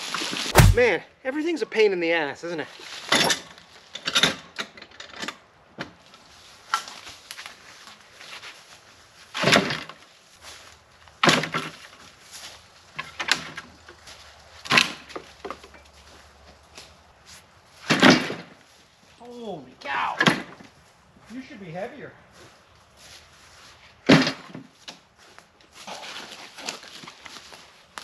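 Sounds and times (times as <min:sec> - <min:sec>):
logs knocking and dropping: 0:00.5 - 0:00.9, 0:17.8 - 0:18.5, 0:24.1 - 0:25.0.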